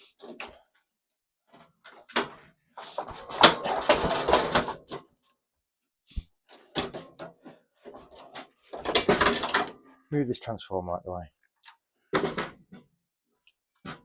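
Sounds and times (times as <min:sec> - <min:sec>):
metal parts scraping and clattering: 0:02.8 - 0:04.9.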